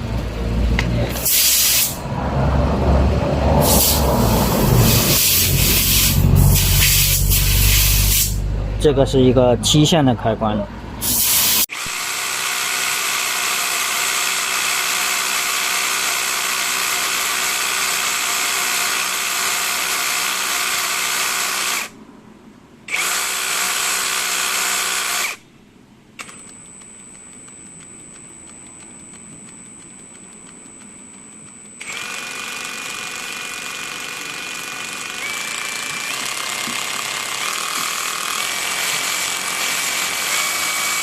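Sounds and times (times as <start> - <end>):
hammer drill motor running: 11.0 - 22.0, 22.9 - 25.4, 30.2 - 41.0.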